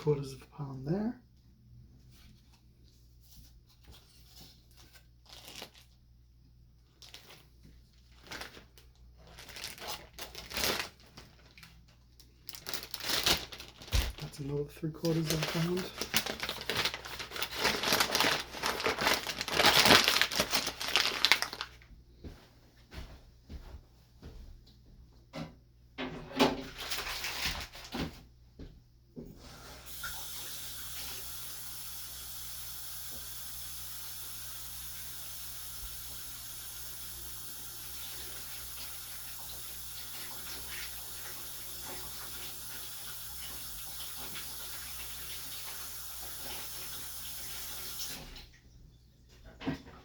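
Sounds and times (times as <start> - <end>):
knocks and rustles of handling: 6.8 - 29.4.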